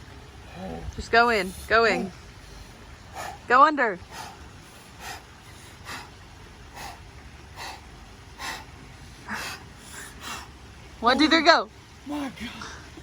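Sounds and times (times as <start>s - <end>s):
person taking sharp breaths: 1.4s - 10.6s.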